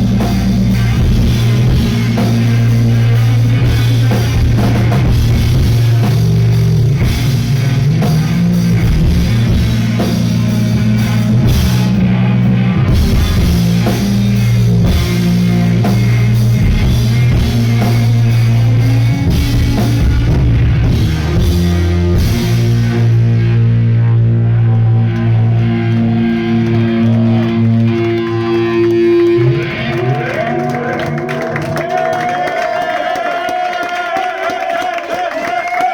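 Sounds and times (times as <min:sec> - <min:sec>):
drums and cymbals: 0:00.0 - 0:23.6
distorted electric guitars: 0:00.0 - 0:32.0.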